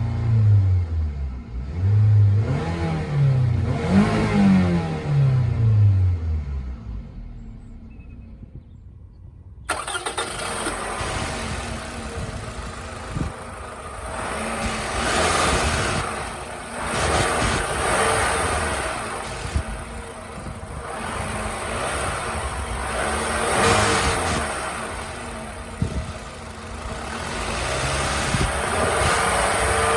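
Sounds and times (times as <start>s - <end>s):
car engine running: 9.7s - 29.9s.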